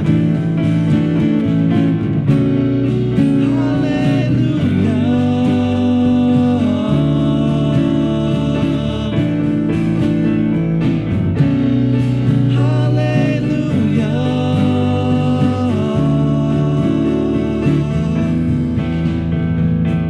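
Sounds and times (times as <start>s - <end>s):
low instrumental accompaniment: 0.0s - 20.0s
voices singing long notes: 2.7s - 10.8s, 11.7s - 19.4s.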